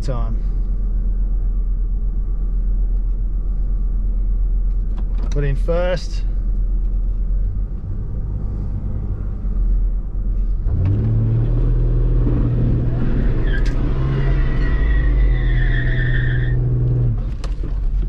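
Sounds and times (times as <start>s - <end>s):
car engine revving: 7.6s - 17.6s
tyres squealing: 12.8s - 16.7s.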